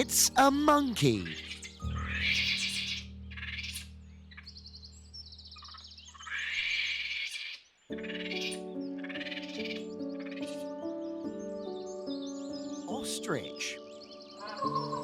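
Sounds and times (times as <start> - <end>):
low background drone: 0.0 - 6.2
monkey screeching: 1.2 - 3.9.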